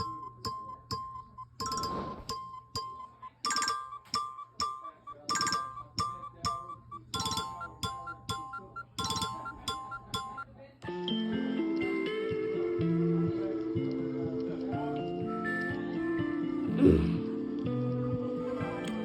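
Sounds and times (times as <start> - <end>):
chiming phone ringtone: 0.0 - 11.8.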